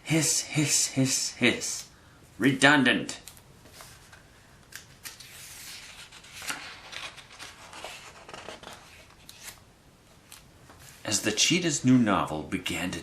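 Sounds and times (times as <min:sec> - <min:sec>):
book pages rustling and turning: 0:03.2 - 0:11.3.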